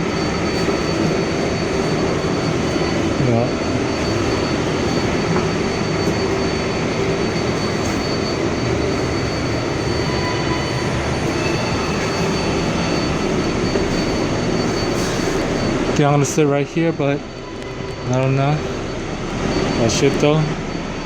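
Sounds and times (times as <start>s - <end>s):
high steady whine: 0.0s - 21.0s
subway wheels rumbling on rails: 0.0s - 21.0s.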